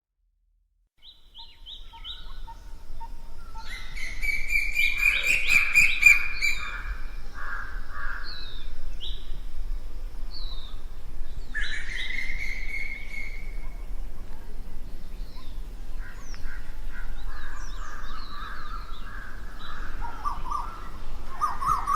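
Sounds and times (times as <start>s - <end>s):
birds singing and calling: 1.0s - 9.5s, 10.3s - 21.9s.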